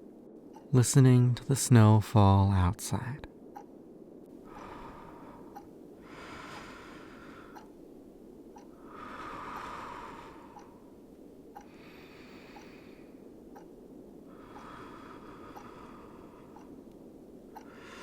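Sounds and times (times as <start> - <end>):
low background ambience: 0.0 - 18.0
soft breaths close to microphone: 4.2 - 18.0.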